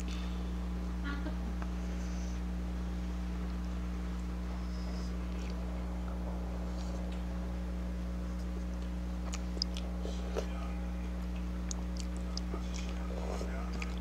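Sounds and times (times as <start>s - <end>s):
steady low hum: 0.0s - 14.0s
person chewing noodles: 5.1s - 7.2s, 8.4s - 14.0s.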